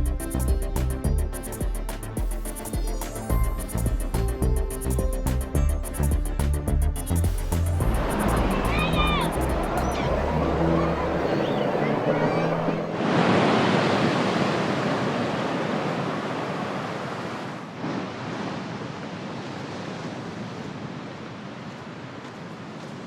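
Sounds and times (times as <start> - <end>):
ocean surf breaking on beach: 7.8 - 23.0.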